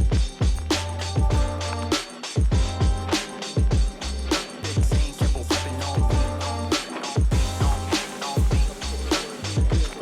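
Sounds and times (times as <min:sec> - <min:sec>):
kick drums: 0:00.0 - 0:04.0, 0:04.8 - 0:06.4, 0:07.2 - 0:08.8, 0:09.6 - 0:10.0
held bass note: 0:00.5 - 0:08.0.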